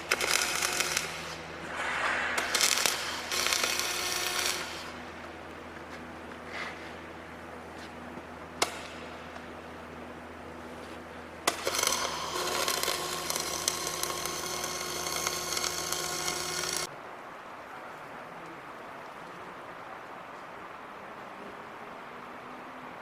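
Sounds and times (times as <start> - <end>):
welding arc crackling buzz: 0.0 - 1.7, 2.3 - 16.9
arc striking crack: 1.0 - 5.6
low machine hum: 1.4 - 12.6.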